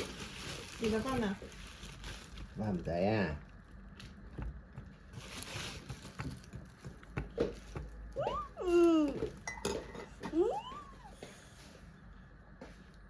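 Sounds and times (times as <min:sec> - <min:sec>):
dishes and cutlery clinking: 0:09.3 - 0:10.4.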